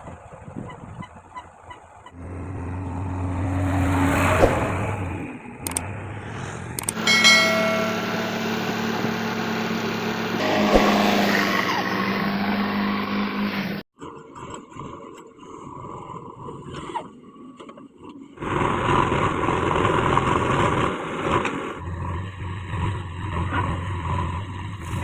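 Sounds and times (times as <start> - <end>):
diesel engine running hard: 2.2 - 13.8, 18.4 - 25.0.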